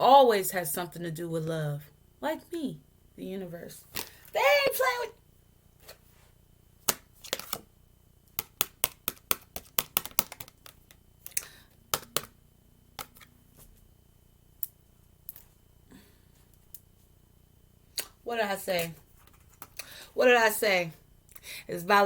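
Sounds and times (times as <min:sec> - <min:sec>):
cards clicking while shuffled: 0:06.8 - 0:07.6, 0:08.3 - 0:12.4, 0:13.0 - 0:13.3.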